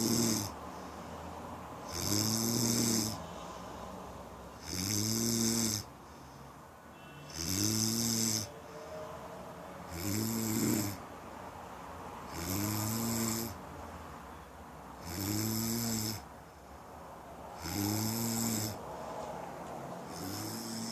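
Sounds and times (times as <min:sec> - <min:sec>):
person snoring: 0:00.0 - 0:01.0, 0:01.8 - 0:03.3, 0:04.6 - 0:05.9, 0:07.3 - 0:09.0, 0:09.9 - 0:11.0, 0:12.3 - 0:13.6, 0:15.0 - 0:16.3, 0:17.6 - 0:18.9, 0:20.0 - 0:20.9.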